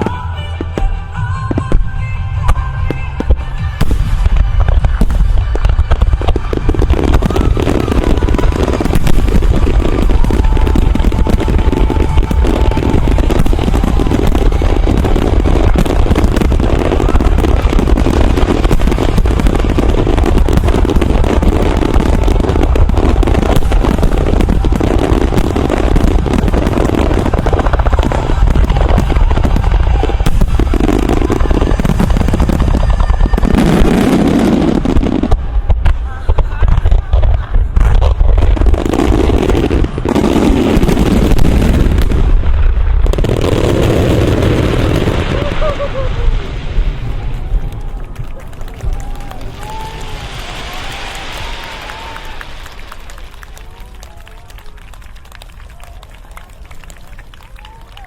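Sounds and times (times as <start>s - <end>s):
music: 0.0s - 17.6s.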